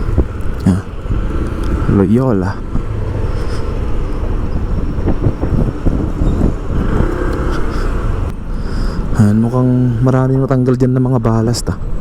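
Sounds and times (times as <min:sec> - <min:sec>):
road traffic rumble: 0:00.0 - 0:12.0.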